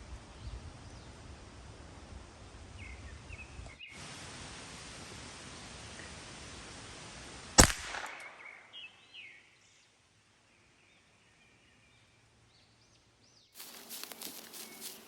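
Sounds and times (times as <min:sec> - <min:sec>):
rifle shot with echo: 0:07.6 - 0:08.6
faint bird chirps: 0:08.2 - 0:15.0.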